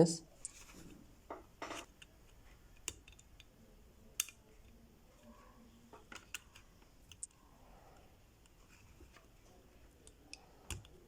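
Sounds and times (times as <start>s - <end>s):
small clicks and taps: 1.3s - 3.5s, 4.1s - 4.8s, 5.9s - 7.4s, 10.0s - 11.0s.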